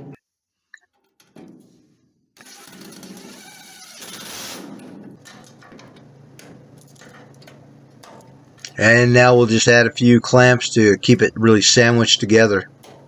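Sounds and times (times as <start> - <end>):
cordless drill driving screw: 2.4 - 4.9.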